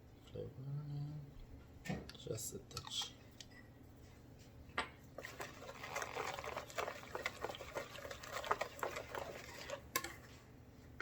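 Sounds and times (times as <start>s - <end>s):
utensil tapping bowl: 4.8s - 10.2s
batter wet slapping: 5.2s - 10.2s.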